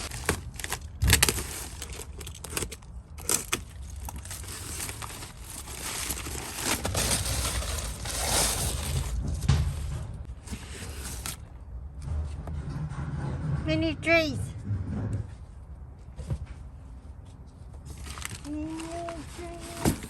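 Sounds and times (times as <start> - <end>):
packing material rustling: 0.0 - 11.5, 17.8 - 20.0.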